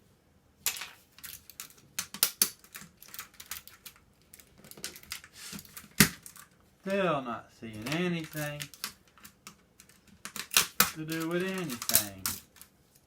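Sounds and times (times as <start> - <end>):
keyboard keys clattering: 9.8 - 12.6.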